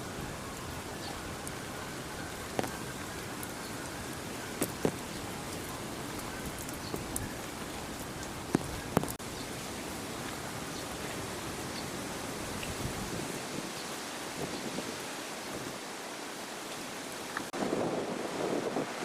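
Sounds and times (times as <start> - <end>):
outdoor background hiss: 0.0 - 19.0.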